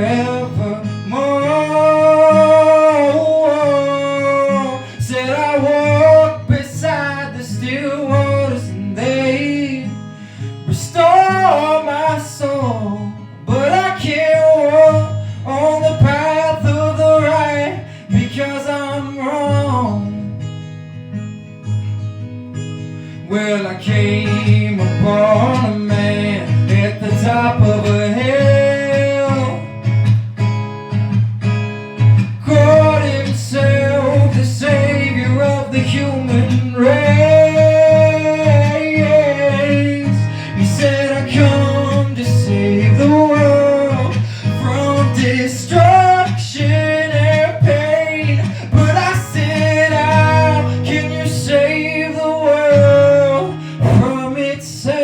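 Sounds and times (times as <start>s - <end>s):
strummed acoustic guitar: 0.0s - 55.0s
person singing: 32.4s - 55.0s.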